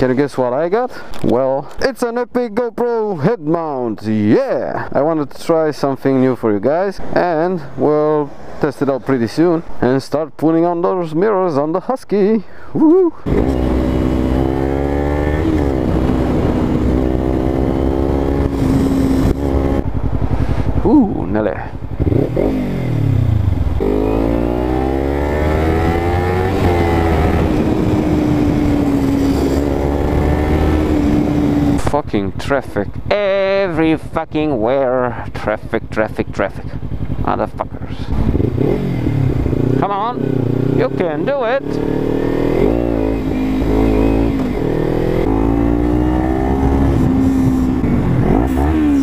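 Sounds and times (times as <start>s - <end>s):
motorcycle engine revving: 13.3s - 49.0s
constant low rumble: 26.4s - 41.7s.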